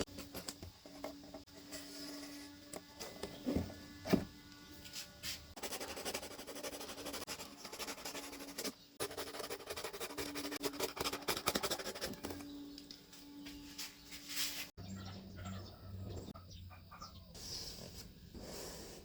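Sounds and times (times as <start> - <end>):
cardboard rasping scratch: 5.6 - 12.4.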